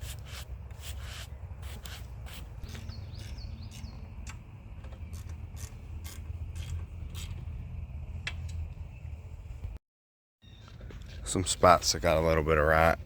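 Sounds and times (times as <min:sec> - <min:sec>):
steady low rumble: 0:01.4 - 0:09.8.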